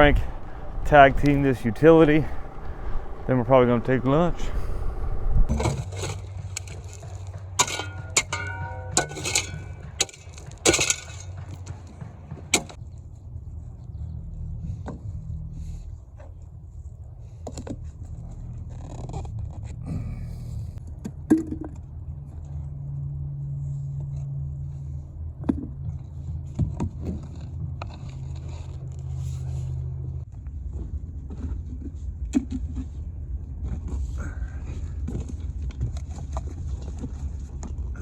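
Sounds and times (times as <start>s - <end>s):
excavator diesel engine running: 0.0s - 5.7s
metallic clanks and scrapes: 4.4s - 11.7s.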